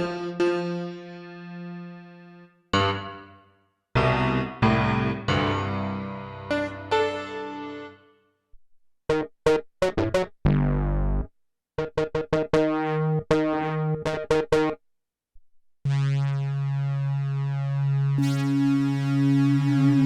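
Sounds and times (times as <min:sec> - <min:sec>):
synthesizer chords and stabs: 0:15.9 - 0:20.0.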